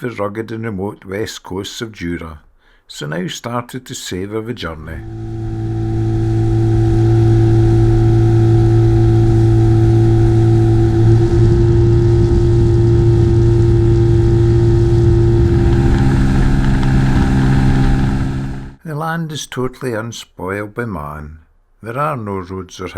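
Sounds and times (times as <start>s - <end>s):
outboard motor humming: 5.0s - 18.8s.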